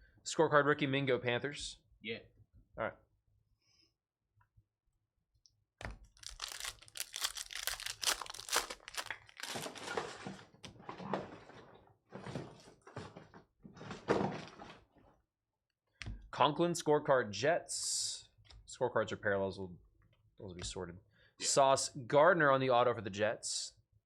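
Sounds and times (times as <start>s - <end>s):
cards being handled: 6.1s - 9.9s
foil wrapper tearing and crinkling: 6.1s - 10.0s.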